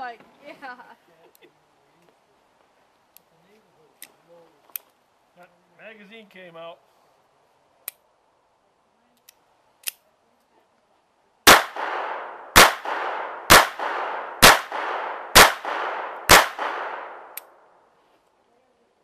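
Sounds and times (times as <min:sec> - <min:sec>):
pistol gunshots with echo: 0:11.5 - 0:17.4.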